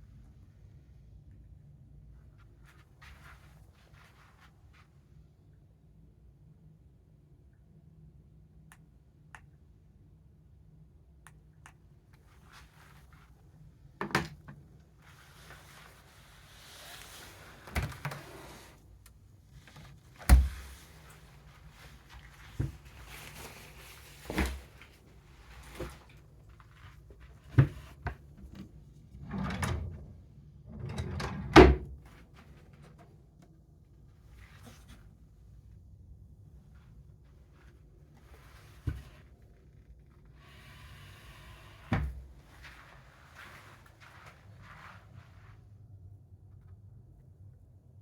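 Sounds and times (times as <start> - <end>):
rustling: 19.5 - 29.1
doors or drawers knocking shut: 30.7 - 32.0.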